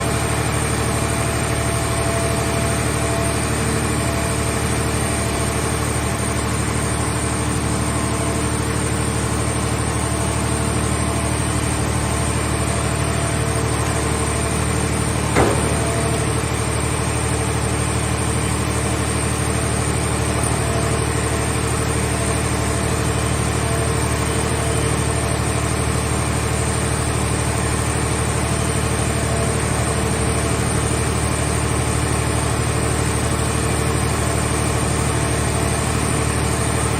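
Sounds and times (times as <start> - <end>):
machine engine running: 0.0 - 32.8
sharp knock: 15.3 - 16.5.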